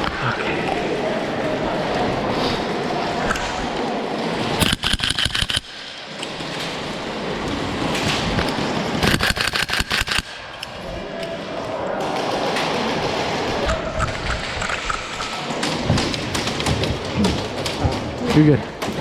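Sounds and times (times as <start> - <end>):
airsoft rifle shots: 9.0 - 10.4.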